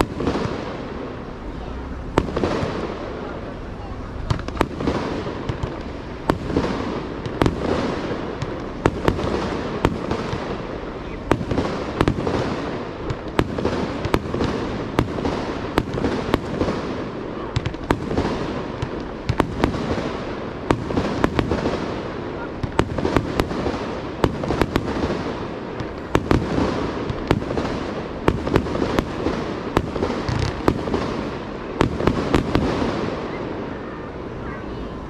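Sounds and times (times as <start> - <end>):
steady rumble: 0.0 - 12.0
firework shells bursting: 0.0 - 21.8.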